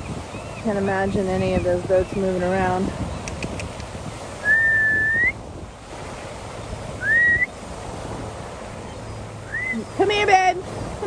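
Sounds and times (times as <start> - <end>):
wind noise on microphone: 0.0 - 11.0
person whistling: 4.4 - 5.4, 7.0 - 7.5, 9.5 - 9.8.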